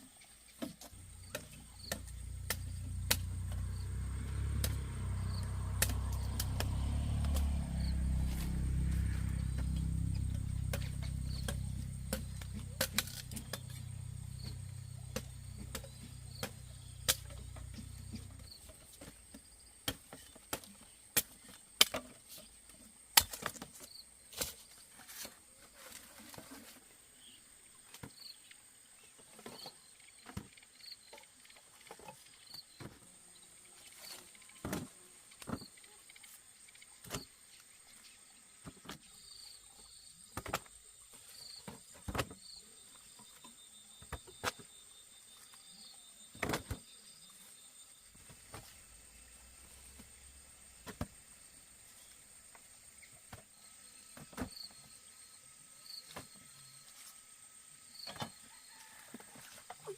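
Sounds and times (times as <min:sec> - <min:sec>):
high insect buzz: 0:00.3 - 0:18.7
low rumble: 0:01.0 - 0:18.6
sharp cracks and snaps: 0:01.3 - 0:03.7, 0:05.7 - 0:07.7.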